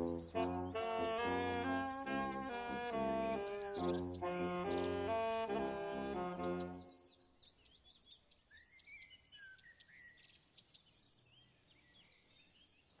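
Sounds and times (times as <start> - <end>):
lower second bird calling: 0.0 - 7.0
songbird singing: 0.0 - 13.0.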